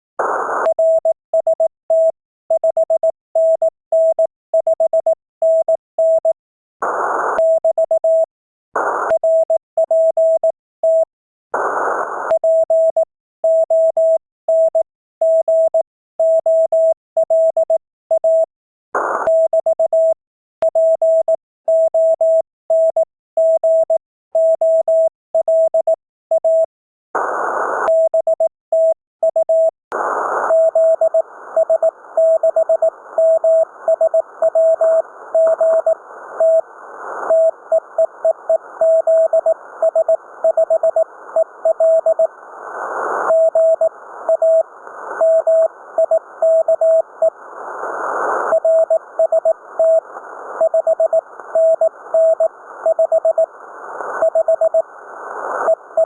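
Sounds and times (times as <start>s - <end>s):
radio static hiss: 30.0s - 32.2s, 32.8s - 38.8s, 42.2s - 46.4s, 47.1s - 50.6s, 51.2s - 56.0s
morse code tone: 30.5s - 36.6s, 37.3s - 42.3s, 43.3s - 44.6s, 45.2s - 47.3s, 48.5s - 50.0s, 50.6s - 53.5s, 54.1s - 54.8s.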